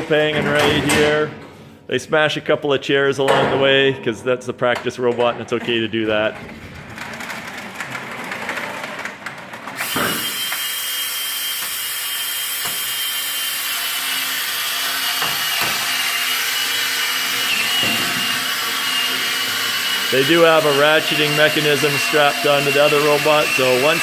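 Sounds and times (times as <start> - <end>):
electric winch motor whining: 6.9 - 24.0.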